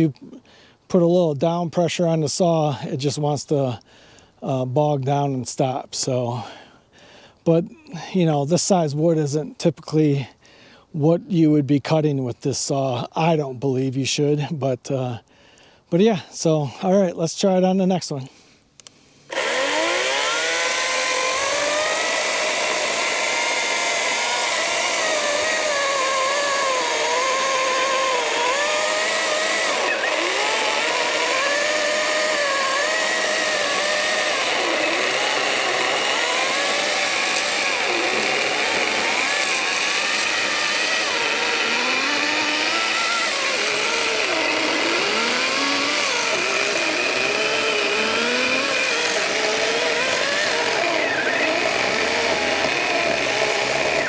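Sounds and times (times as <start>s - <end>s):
electric chainsaw cutting log: 19.3s - 54.0s.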